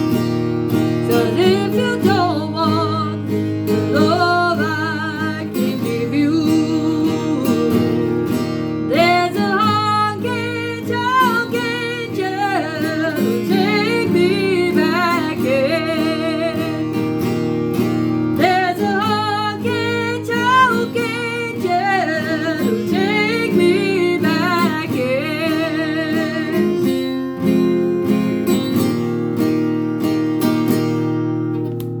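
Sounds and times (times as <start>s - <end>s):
strummed acoustic guitar: 0.0s - 32.0s
person singing with vibrato: 1.0s - 16.9s, 18.4s - 27.2s.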